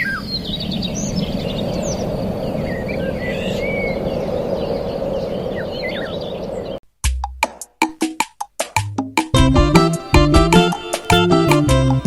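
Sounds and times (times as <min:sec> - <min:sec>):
birds chirping and calling: 0:00.0 - 0:06.8.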